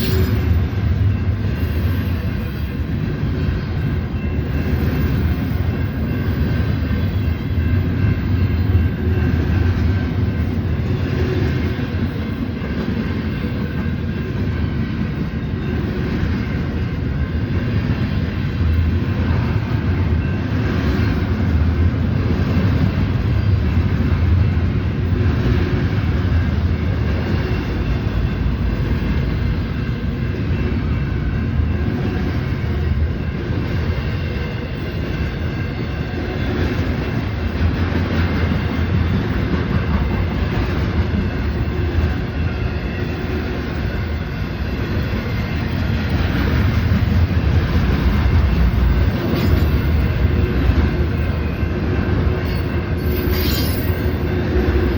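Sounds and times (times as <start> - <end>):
freight train wheels on rails: 0.0 - 54.9.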